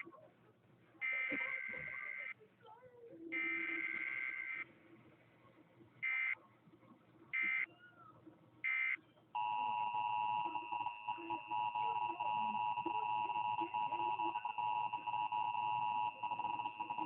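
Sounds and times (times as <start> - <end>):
digital data tone bursts: 1.0 - 2.3, 3.4 - 4.6, 8.7 - 17.0.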